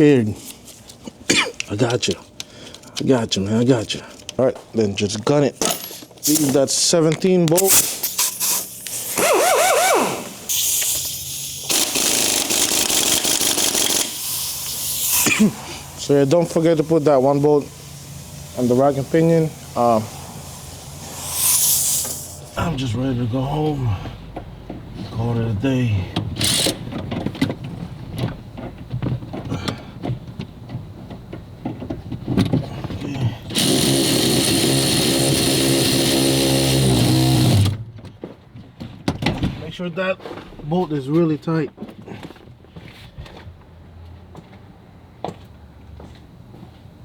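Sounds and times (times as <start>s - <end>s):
air hiss: 6.2s - 6.8s, 7.6s - 22.7s
impact wrench hammering: 7.6s - 22.6s.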